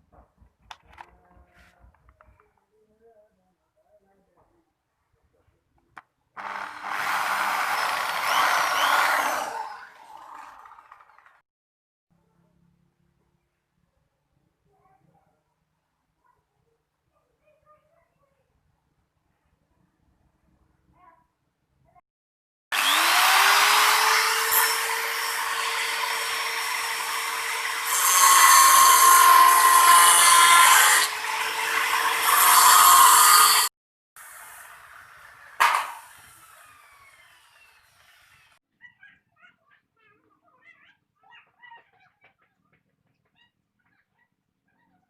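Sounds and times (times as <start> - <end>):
small electric motor running: 6.4 - 10.2, 22.8 - 33.7, 36.0 - 38.5
small electric motor whining: 36.0 - 38.5.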